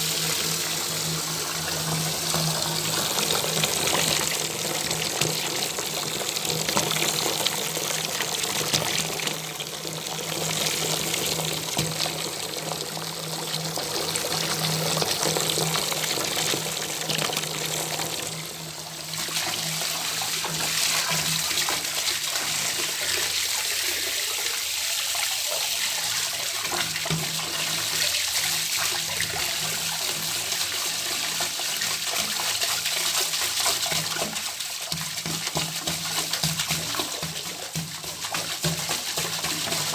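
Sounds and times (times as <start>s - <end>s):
tap water running into bathtub: 0.0s - 39.9s.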